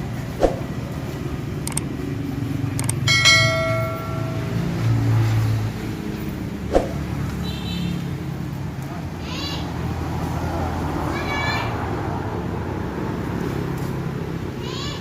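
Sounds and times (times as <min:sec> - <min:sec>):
metallic clang ringing like a bell: 0:03.1 - 0:05.6.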